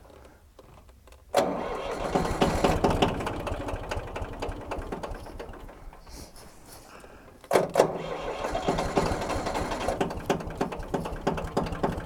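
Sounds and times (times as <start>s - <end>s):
tractor engine cranking: 1.3s - 6.4s, 7.3s - 12.0s
tractor engine chugging: 1.4s - 6.4s, 7.8s - 12.0s.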